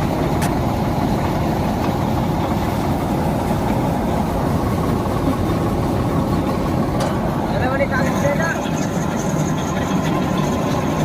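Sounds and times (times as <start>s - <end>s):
tractor diesel engine running: 0.0s - 11.0s.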